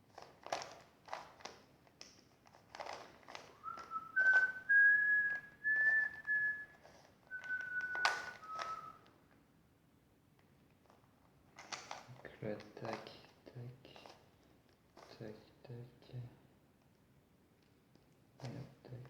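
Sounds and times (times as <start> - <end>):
puzzle cube clicking: 0.1 - 4.5, 6.8 - 8.8
man whistling a tune: 3.6 - 9.0.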